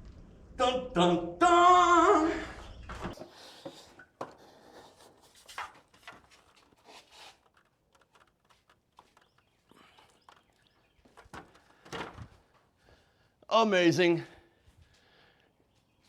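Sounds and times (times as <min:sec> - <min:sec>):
faint handling knocks and clicks: 0:03.1 - 0:12.7.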